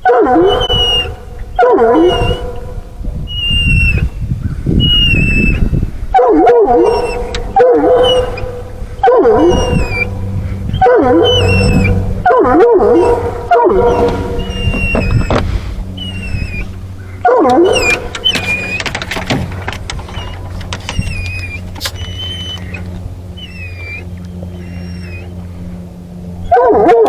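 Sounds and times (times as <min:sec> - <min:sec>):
dog baying: 0:06.1 - 0:25.4.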